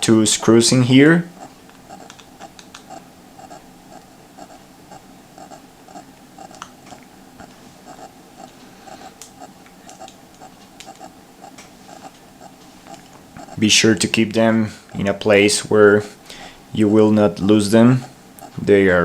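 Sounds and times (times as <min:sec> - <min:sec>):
faint regular ticking: 0:00.0 - 0:19.0
screwdriver clicking and scraping: 0:07.9 - 0:13.6.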